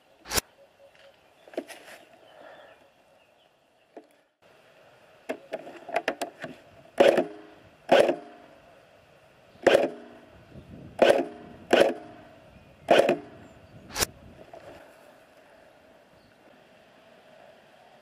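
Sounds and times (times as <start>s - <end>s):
quiet snaps: 0.2s - 0.5s
airsoft rifle shots: 7.0s - 8.4s, 9.6s - 10.2s, 11.0s - 12.2s, 12.9s - 14.1s.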